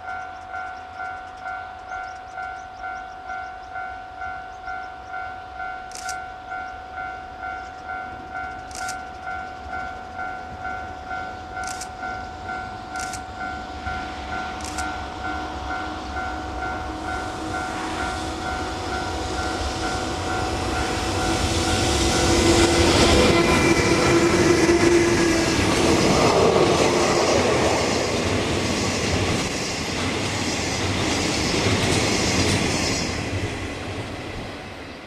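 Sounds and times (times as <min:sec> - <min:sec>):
railway crossing bell ringing: 0:00.0 - 0:28.1
train running: 0:00.0 - 0:35.0
bird chirps: 0:00.1 - 0:05.2.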